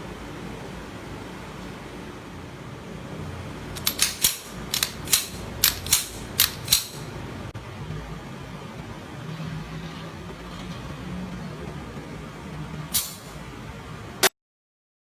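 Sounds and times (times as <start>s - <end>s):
pistol action clicking: 3.8s - 7.0s.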